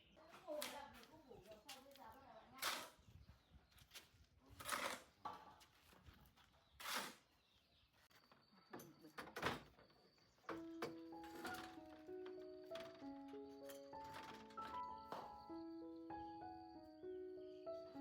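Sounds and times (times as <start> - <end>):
soft background music: 10.4 - 18.0.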